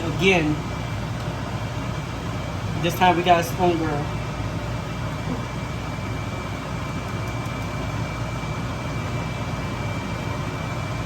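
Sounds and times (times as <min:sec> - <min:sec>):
mechanical hum and hiss: 0:00.0 - 0:11.0.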